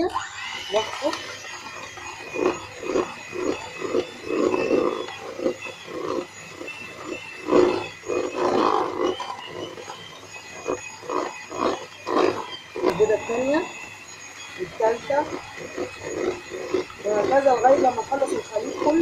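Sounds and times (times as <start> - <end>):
beaters churning thick mixture: 0.0 - 19.0
electric hand mixer whine: 0.0 - 19.0.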